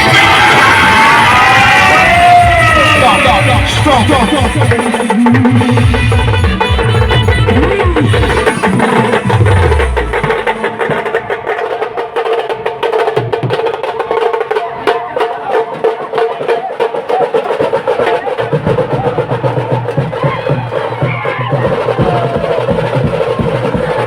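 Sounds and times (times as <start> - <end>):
loud band music: 0.0 - 12.6
heavy low drum sounds: 2.0 - 14.9.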